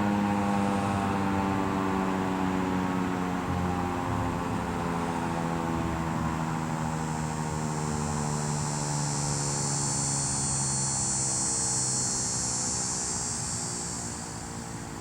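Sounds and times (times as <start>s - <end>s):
warning siren winding down: 0.1s - 10.8s.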